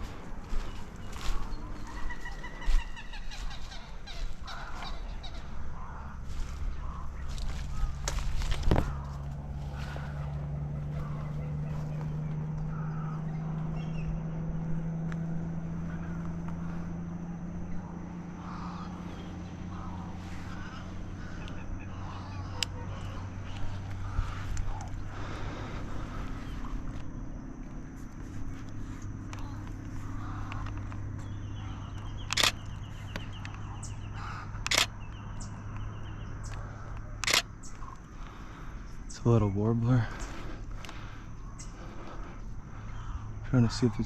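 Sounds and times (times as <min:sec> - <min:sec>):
low mechanical hum: 0:00.0 - 0:44.0
faint bird chirps: 0:00.4 - 0:44.0
camera shutter firing: 0:32.2 - 0:32.7, 0:34.7 - 0:34.9, 0:37.2 - 0:37.5.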